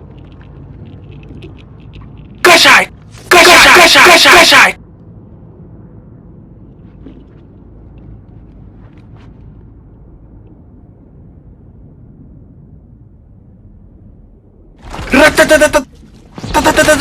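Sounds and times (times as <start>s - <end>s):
faint clicks and ticks: 0.0s - 2.4s
low steady rumble: 0.0s - 17.0s.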